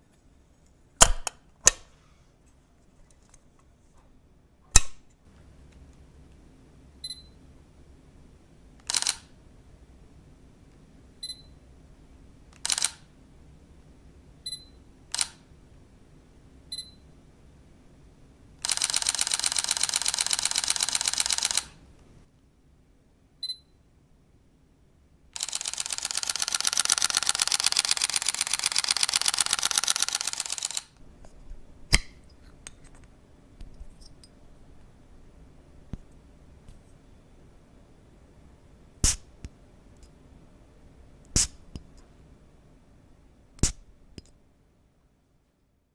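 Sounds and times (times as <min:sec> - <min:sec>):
camera shutter clicks: 0:01.0 - 0:01.8, 0:08.8 - 0:09.3, 0:12.6 - 0:13.1, 0:15.1 - 0:15.4, 0:18.6 - 0:21.8, 0:25.4 - 0:31.0
short high camera beeps: 0:07.0 - 0:07.4, 0:08.9 - 0:09.2, 0:12.6 - 0:13.0, 0:14.5 - 0:15.4, 0:16.7 - 0:17.0, 0:23.4 - 0:23.8, 0:25.4 - 0:30.9
rapid shutter clatter: 0:25.4 - 0:31.0.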